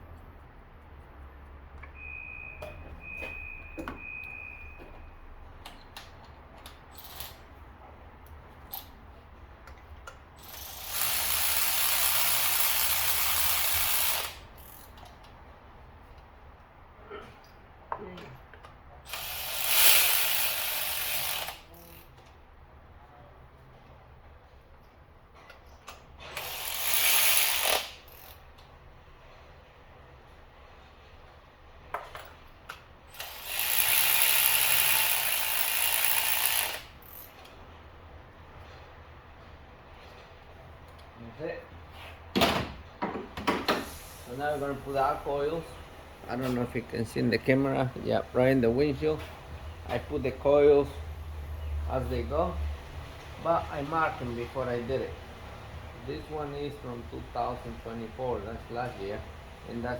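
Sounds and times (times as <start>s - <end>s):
thin high squeak: 2.0s - 5.2s
ratchet clicking and knocking: 9.7s - 15.2s, 19.1s - 22.3s, 26.3s - 28.7s, 33.1s - 37.6s.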